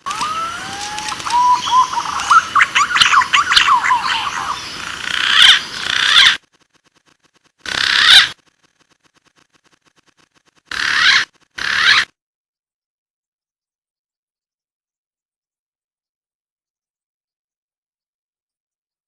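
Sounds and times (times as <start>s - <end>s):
pigeon calling: 0.0s - 6.4s, 7.6s - 8.4s, 10.7s - 12.1s.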